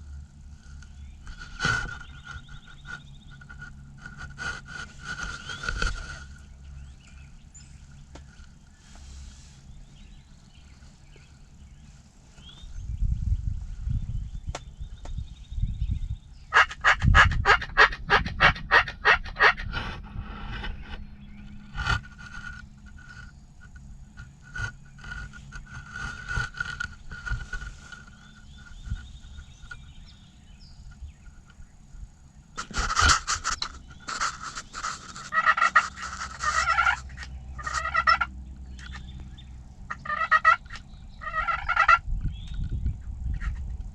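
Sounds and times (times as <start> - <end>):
low rumbling: 0.0 - 43.9
turkey yelping: 16.5 - 19.8, 33.0 - 38.3, 39.9 - 42.0.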